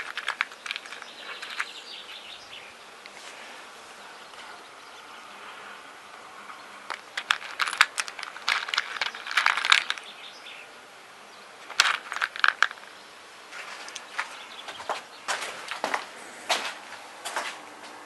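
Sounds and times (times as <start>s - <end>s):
cables and tools clicking: 0.0s - 2.0s, 6.8s - 10.1s, 11.6s - 17.6s.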